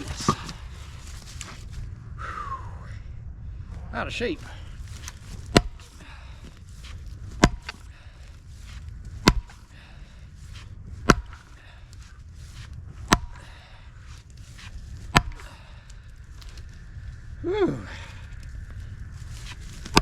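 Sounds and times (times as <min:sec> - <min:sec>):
hard breathing: 0:00.0 - 0:20.0
splitting maul striking wood: 0:05.0 - 0:06.0, 0:06.9 - 0:07.9, 0:09.2 - 0:09.7, 0:10.5 - 0:13.7, 0:14.5 - 0:15.6, 0:19.4 - 0:20.0.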